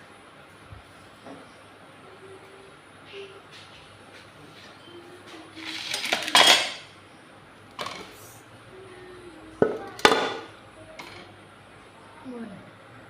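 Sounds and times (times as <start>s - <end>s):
dishes and cutlery clattering: 5.7s - 6.9s, 9.6s - 11.3s.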